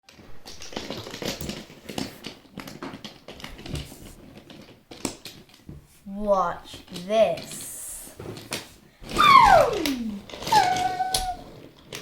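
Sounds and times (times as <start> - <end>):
toys clicking on hard surface: 6.4 - 12.0.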